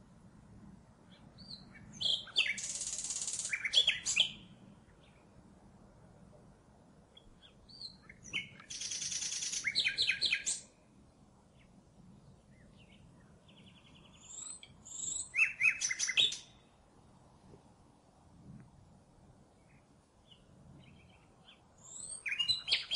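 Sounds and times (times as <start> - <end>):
nightingale singing trills: 1.0 - 5.3, 7.1 - 16.8, 19.5 - 22.9.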